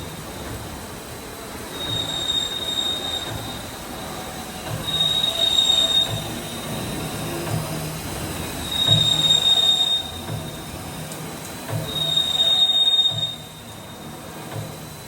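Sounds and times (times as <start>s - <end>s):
lathe high-pitched squeal: 1.7s - 4.2s, 4.8s - 7.2s, 8.5s - 10.8s, 11.9s - 14.2s.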